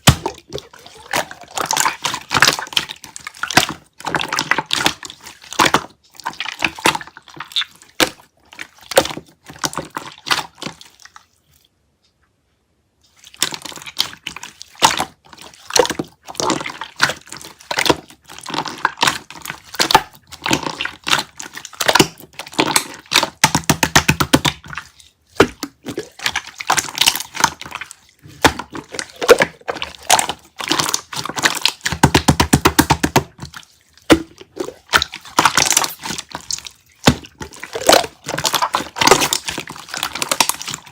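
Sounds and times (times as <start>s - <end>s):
slime squishing: 0.0s - 11.8s, 13.0s - 40.9s.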